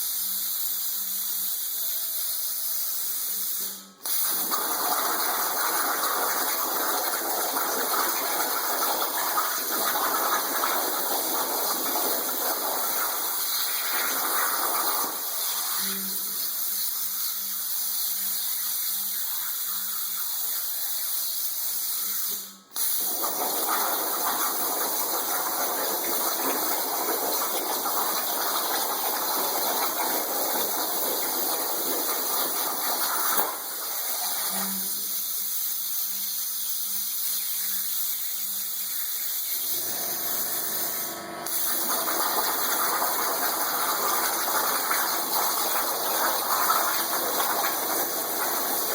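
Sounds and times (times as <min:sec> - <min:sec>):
plasma torch gushing hiss: 0:00.0 - 0:48.9.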